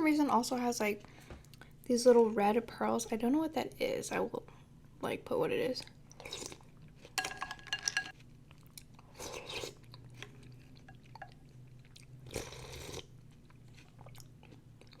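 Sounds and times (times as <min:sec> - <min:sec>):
chewing: 0:08.1 - 0:15.0.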